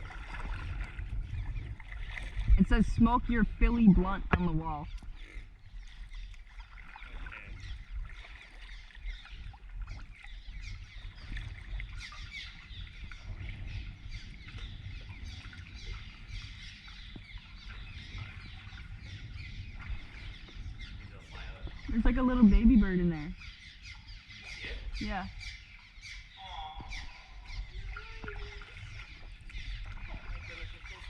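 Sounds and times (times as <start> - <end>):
steady low rumble: 0.0 - 5.9, 12.6 - 25.4
birds twittering: 0.0 - 31.0.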